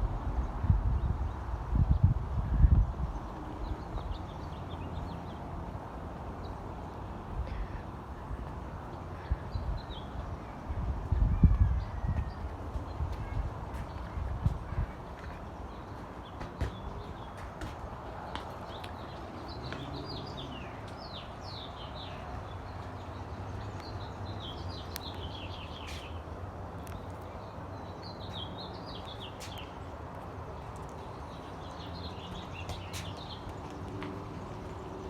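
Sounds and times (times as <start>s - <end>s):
songbird chirping: 11.4s - 35.0s.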